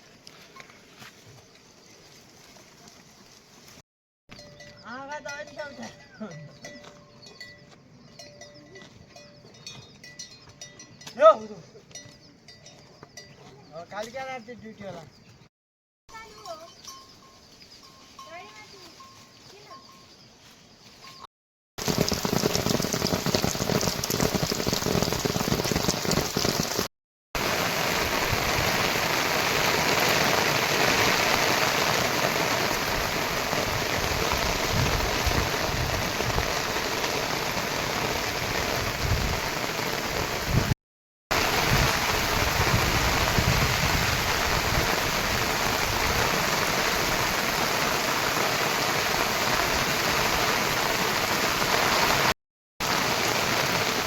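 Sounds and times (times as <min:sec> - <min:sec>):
heavy rain falling: 0:21.8 - 0:54.0.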